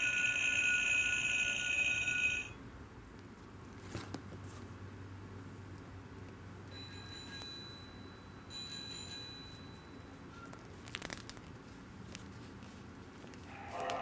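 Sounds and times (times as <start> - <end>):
high electronic ringing tone: 0.0 - 2.6
richer electronic ring: 0.0 - 2.6.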